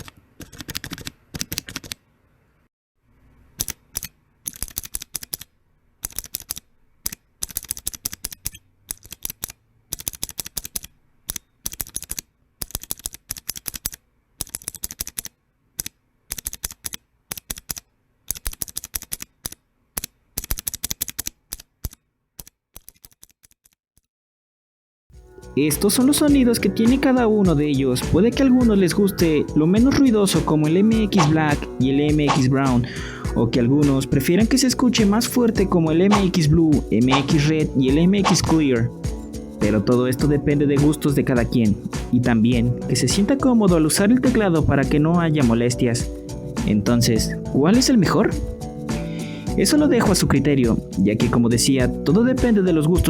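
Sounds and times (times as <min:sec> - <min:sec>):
mechanical keyboard typing clicks: 0:00.0 - 0:02.0, 0:03.6 - 0:23.8.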